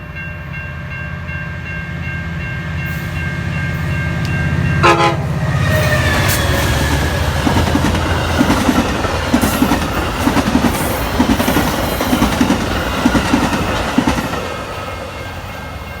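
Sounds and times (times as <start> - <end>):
locomotive engine drone: 0.0 - 16.0
train wheels clacking over rail joints: 5.8 - 15.0.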